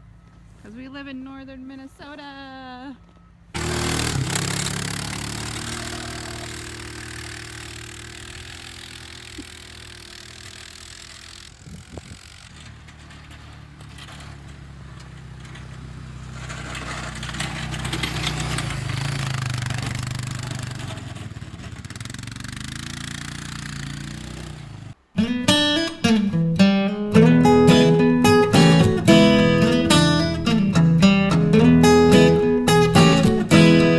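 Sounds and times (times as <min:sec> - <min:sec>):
vehicle engine running: 0:03.6 - 0:25.1, 0:27.1 - 0:33.9
strummed acoustic guitar music: 0:25.0 - 0:33.9.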